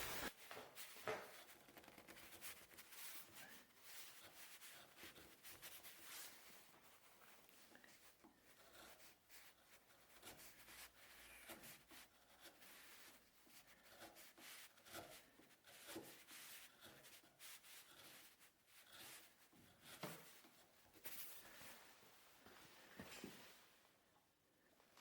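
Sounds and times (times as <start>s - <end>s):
faint scratching and rubbing: 0.0s - 23.8s.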